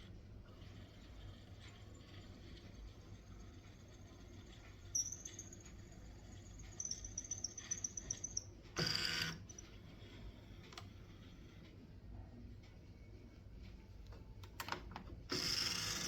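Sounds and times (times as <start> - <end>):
printer motors whining and ticking: 0.0 - 11.8, 15.2 - 16.0.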